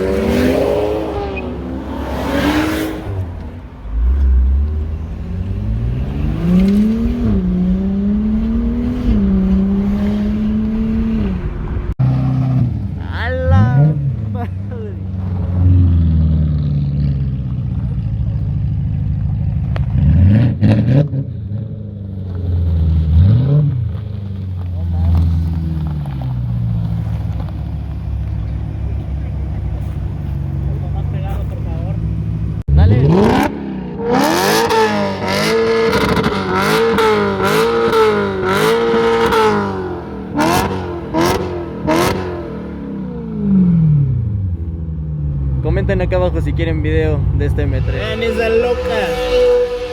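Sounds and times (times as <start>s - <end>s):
car engine idling and revving: 0.0s - 49.9s.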